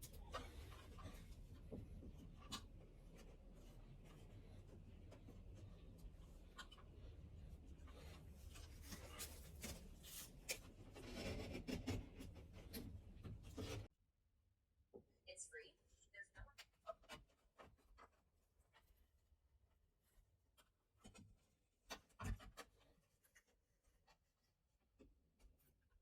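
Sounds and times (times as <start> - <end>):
scratching and rustling: 0.0 - 13.9.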